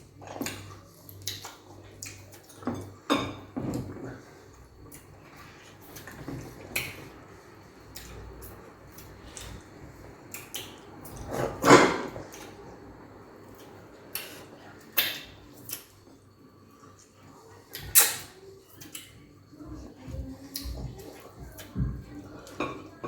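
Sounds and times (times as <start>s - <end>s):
dishes clicking and knocking: 2.5s - 4.2s.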